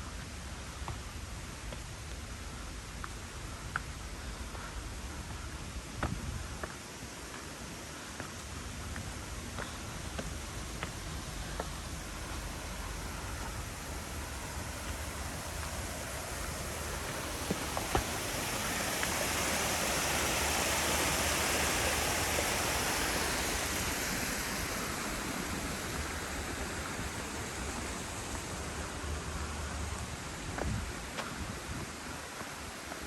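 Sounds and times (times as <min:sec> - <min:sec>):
waterfall splashing: 0:10.0 - 0:30.4.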